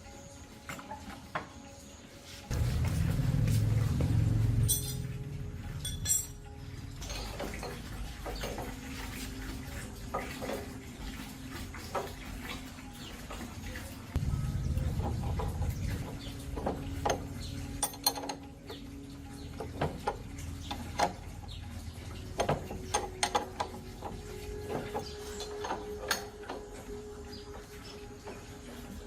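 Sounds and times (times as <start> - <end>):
metal hand tools clinking: 4.4 - 8.8, 14.2 - 21.2
faint steady hum: 14.1 - 29.0.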